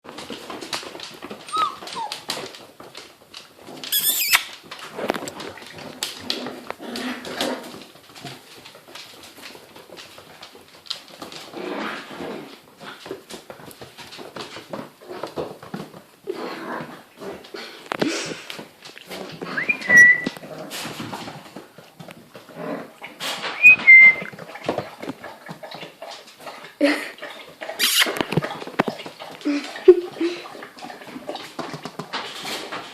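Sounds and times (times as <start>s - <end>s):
rustling and scuffling: 0.0s - 25.6s
puppies squeaking and whimpering: 1.5s - 2.4s, 3.9s - 4.5s, 19.5s - 20.4s, 23.6s - 24.3s, 27.8s - 28.2s.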